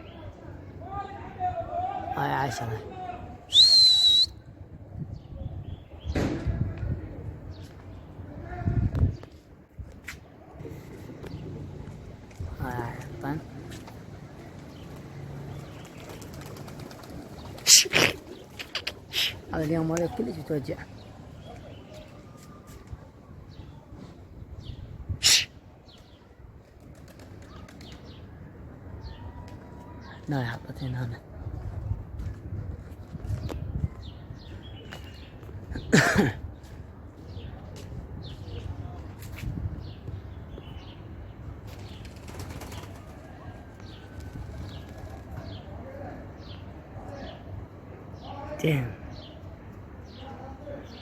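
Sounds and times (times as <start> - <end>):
pigeon wings flapping: 14.6 - 18.9, 26.8 - 28.0, 41.7 - 43.3.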